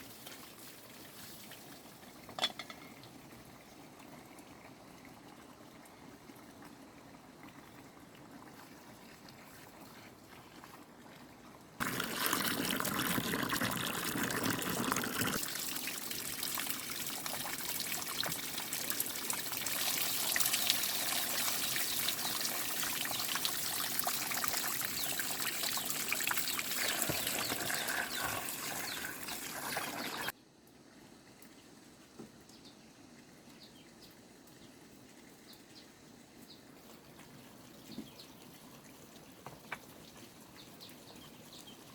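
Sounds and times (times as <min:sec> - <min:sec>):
water pouring and trickling: 0:00.0 - 0:30.4, 0:33.1 - 0:41.9.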